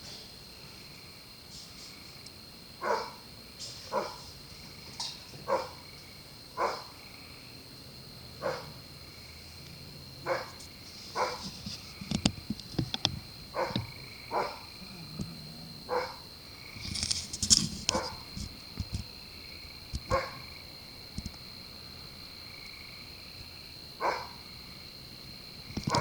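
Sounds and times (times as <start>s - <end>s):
insect drone: 0.0s - 26.0s
distant dog barking: 2.8s - 3.2s, 3.9s - 4.3s, 5.4s - 5.8s, 6.6s - 7.0s, 8.4s - 8.9s, 10.0s - 11.5s, 13.5s - 16.4s, 17.9s - 18.3s, 20.1s - 20.5s, 24.0s - 24.4s.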